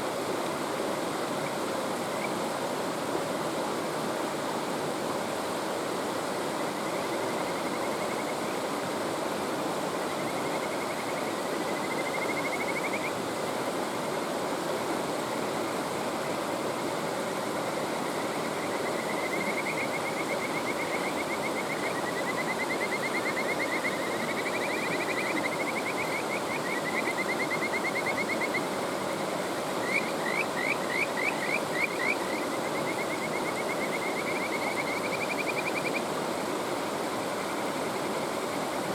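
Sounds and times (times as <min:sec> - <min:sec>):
rushing mountain stream: 0:00.0 - 0:38.9
frogs calling: 0:06.8 - 0:08.5, 0:10.0 - 0:13.6, 0:17.8 - 0:36.4.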